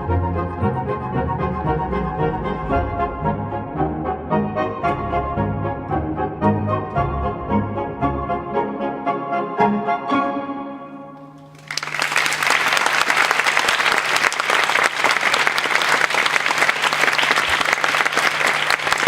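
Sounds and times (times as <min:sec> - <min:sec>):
orchestral held chord: 0:00.0 - 0:08.6
audience applause: 0:11.5 - 0:19.0.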